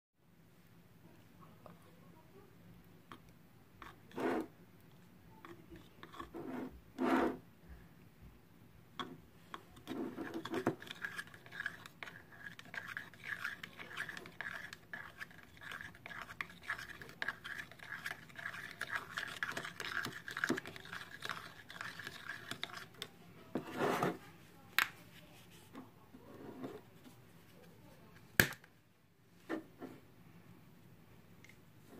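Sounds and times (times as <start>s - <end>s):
utensil scraping in container: 3.8s - 4.5s, 5.7s - 7.4s, 9.8s - 24.2s.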